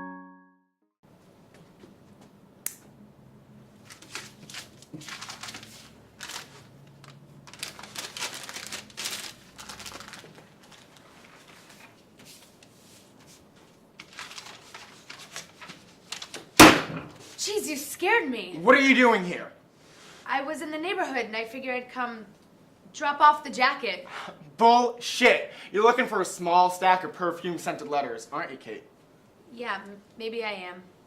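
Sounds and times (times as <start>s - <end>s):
paper rustling and crinkling: 3.8s - 16.6s.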